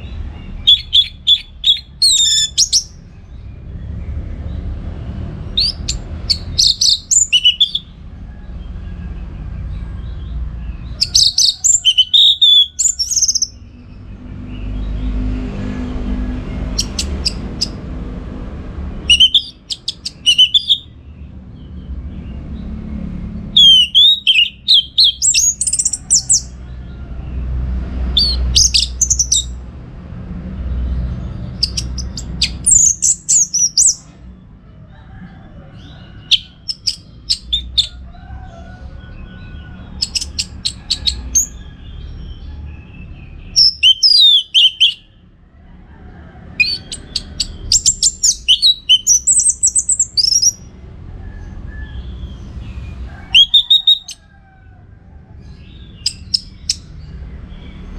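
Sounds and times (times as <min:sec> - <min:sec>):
thrush singing: 0:00.0 - 0:03.1, 0:05.4 - 0:08.0, 0:10.8 - 0:13.9, 0:19.0 - 0:20.9, 0:23.5 - 0:26.6, 0:43.5 - 0:45.1, 0:46.6 - 0:50.7, 0:52.6 - 0:54.2.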